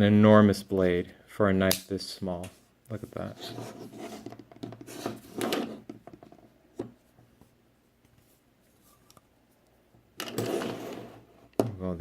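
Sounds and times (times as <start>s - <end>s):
hands rubbing and shuffling: 6.8s - 9.7s.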